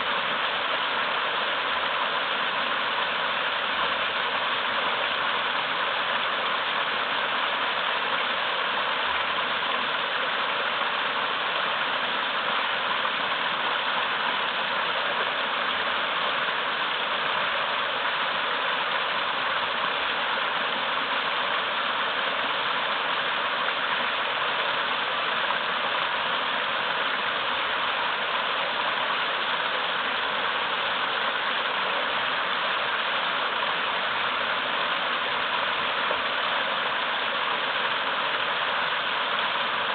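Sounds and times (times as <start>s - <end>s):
waterfall rushing over rocks: 0.0s - 39.9s.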